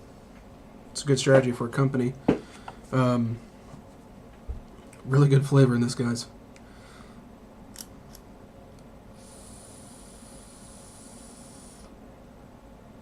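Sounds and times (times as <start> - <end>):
airy hiss of vaping: 9.2 - 11.9.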